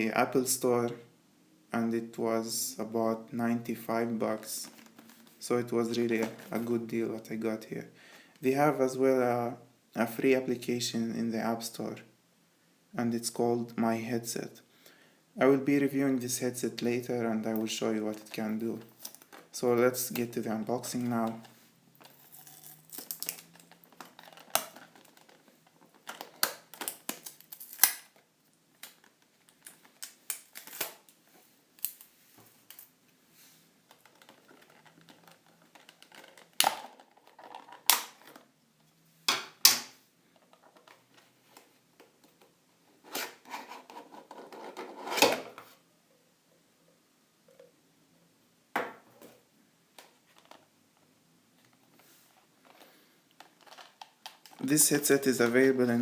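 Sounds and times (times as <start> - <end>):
packaging being opened by hand: 4.6 - 5.4, 18.1 - 31.2, 33.8 - 38.5, 51.6 - 55.1.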